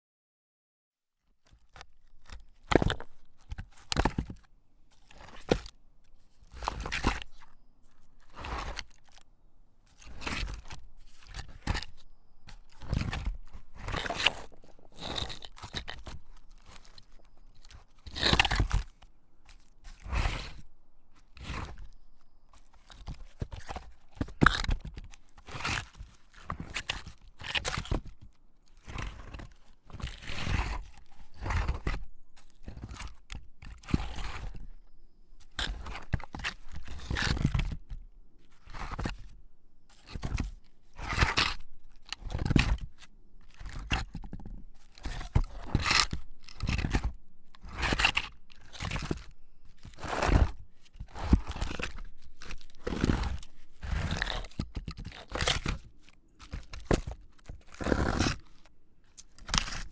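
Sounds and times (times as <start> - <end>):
heavy rock scraping and grinding: 12.8 - 17.3, 49.8 - 55.8, 56.5 - 58.4.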